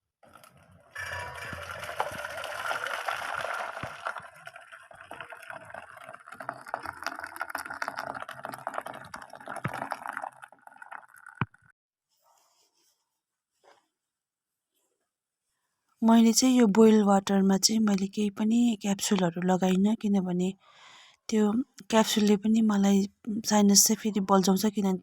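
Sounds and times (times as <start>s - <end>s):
kettle water gurgling: 0.2s - 11.7s.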